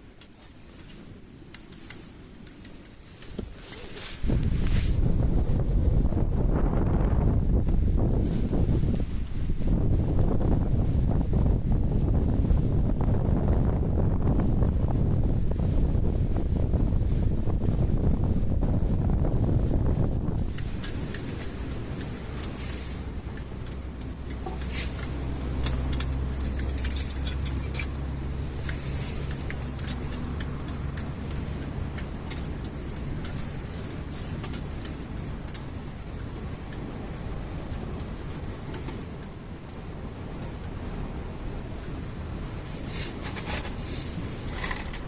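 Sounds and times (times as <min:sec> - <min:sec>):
low engine hum: 0:00.0 - 0:45.0
light clicks and clinks: 0:23.3 - 0:40.8.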